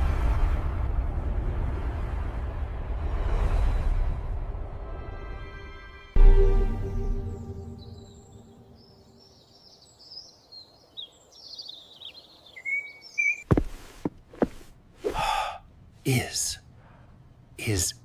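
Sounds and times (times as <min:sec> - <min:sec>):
deep rumble: 0:00.0 - 0:05.0
birds chirping: 0:07.2 - 0:18.0
short breathy rush: 0:14.5 - 0:17.9.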